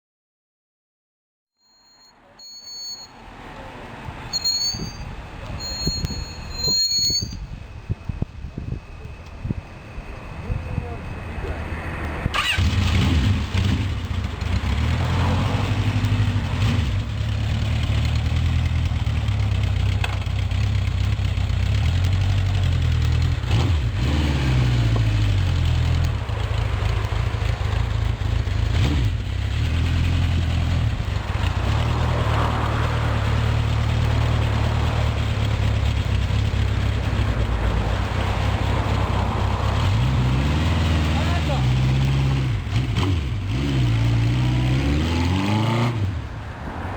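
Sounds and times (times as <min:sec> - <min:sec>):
motorcycle engine idling and revving: 0:01.6 - 0:46.9.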